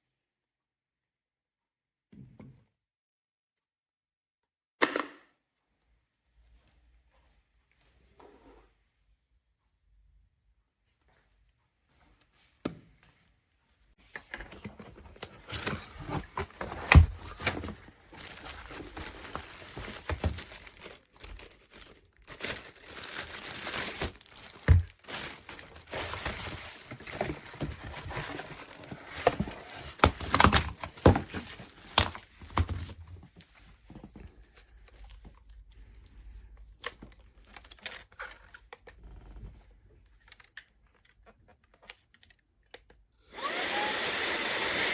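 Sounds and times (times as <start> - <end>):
crinkling handling noise: 14.0 - 42.8.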